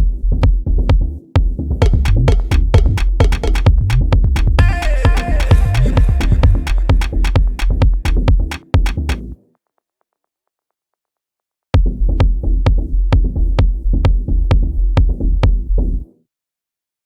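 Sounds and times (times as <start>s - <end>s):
electronic drum machine beat: 0.0s - 9.2s, 11.8s - 15.7s.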